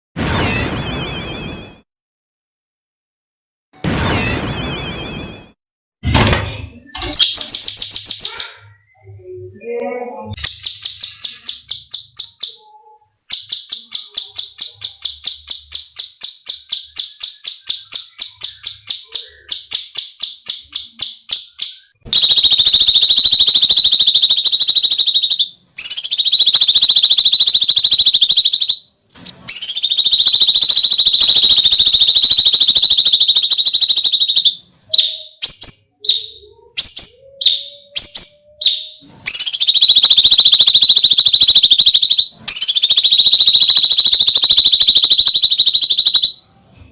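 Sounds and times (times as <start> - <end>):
songbird rattling trill: 10.4 - 12.6, 13.3 - 28.8, 29.5 - 46.4.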